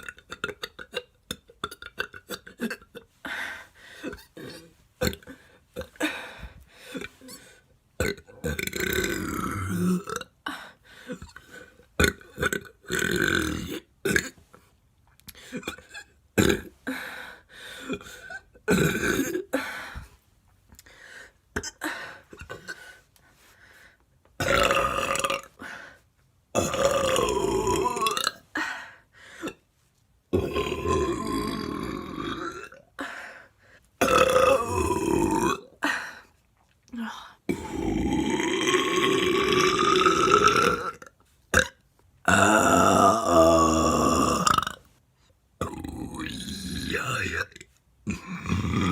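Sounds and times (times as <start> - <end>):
woman burping: 0.0 - 3.1, 4.1 - 10.5, 15.5 - 16.8, 17.8 - 19.6, 21.5 - 22.9, 24.4 - 25.6, 26.6 - 28.6, 30.3 - 33.0, 34.0 - 36.0, 37.5 - 44.8, 45.6 - 48.9.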